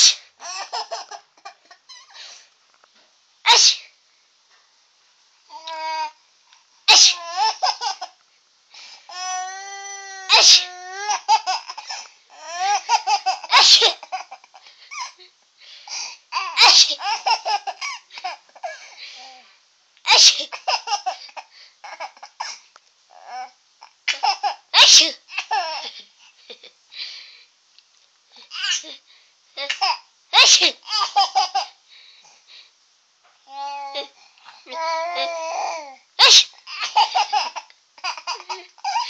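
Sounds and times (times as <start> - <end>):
adult fake sneezing: 0.0 - 0.4, 3.5 - 4.0, 6.9 - 7.3, 10.3 - 10.8, 13.4 - 14.1, 16.4 - 17.2, 20.1 - 20.6, 24.1 - 26.0, 29.6 - 30.8, 36.2 - 37.2
baby laughing: 0.0 - 2.2, 6.9 - 8.2, 10.3 - 15.2, 16.4 - 18.8, 20.1 - 22.5, 29.6 - 31.8, 34.7 - 39.0.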